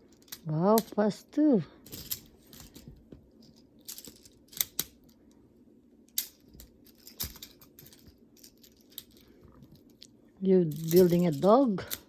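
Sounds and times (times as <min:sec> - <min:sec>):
light rattling and rustling: 0:01.8 - 0:04.8, 0:06.3 - 0:10.1, 0:10.7 - 0:12.0
magnetic toy pieces clicking: 0:03.9 - 0:05.0.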